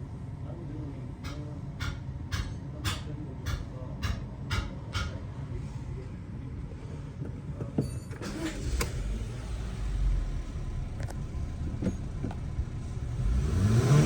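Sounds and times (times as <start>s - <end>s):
car engine idling: 6.3s - 14.0s.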